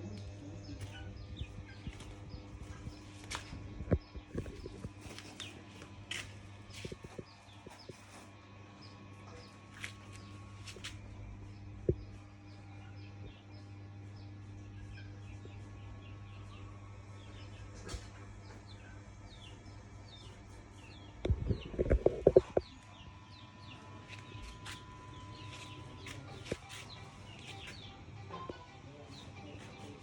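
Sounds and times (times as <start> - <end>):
small birds chirping: 0.0 - 30.0
steady low hum: 0.0 - 30.0.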